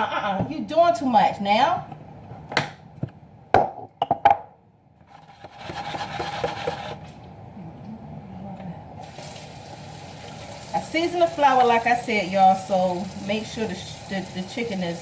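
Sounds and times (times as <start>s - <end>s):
things knocking on a counter: 3.5s - 4.5s.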